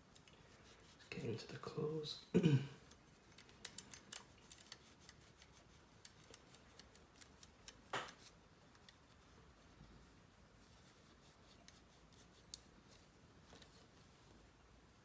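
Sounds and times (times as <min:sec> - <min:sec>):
small metal clicks and ticks: 0:00.1 - 0:00.4, 0:02.8 - 0:09.1, 0:12.4 - 0:12.7.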